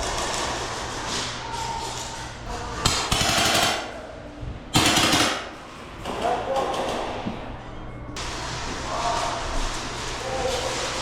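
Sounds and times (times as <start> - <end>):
airsoft gun rapid bursts: 2.9 - 3.9, 4.8 - 5.5.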